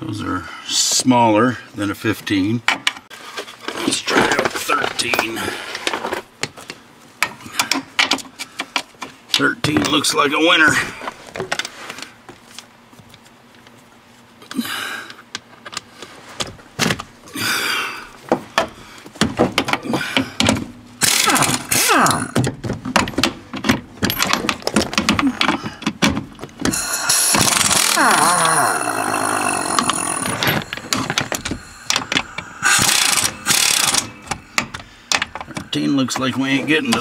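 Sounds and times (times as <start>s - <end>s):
metal tools clinking on bolts: 3.8s - 5.6s, 9.4s - 10.3s, 23.0s - 25.7s
steady power tool noise: 21.0s - 22.1s, 26.7s - 34.8s
short rasping bursts: 32.6s - 34.1s.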